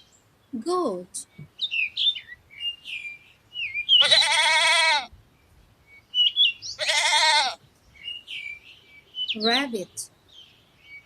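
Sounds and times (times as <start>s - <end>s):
small birds chirping: 0.0s - 11.0s
goat bleating: 4.0s - 5.1s, 6.8s - 7.6s.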